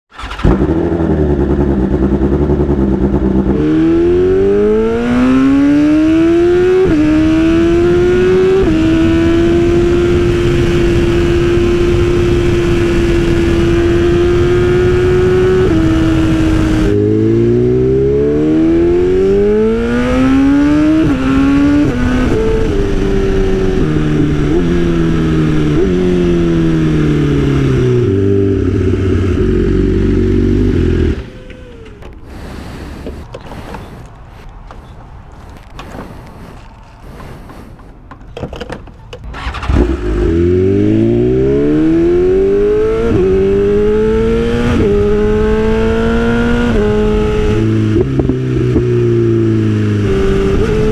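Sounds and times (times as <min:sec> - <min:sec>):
motorcycle engine accelerating and shifting: 0:00.1 - 0:37.5, 0:39.2 - 0:50.9.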